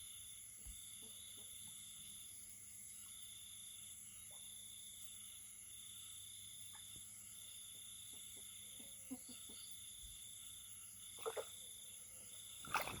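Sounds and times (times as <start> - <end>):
high-pitched frog chorus: 6.0 - 13.0
frog croaks: 11.1 - 11.7.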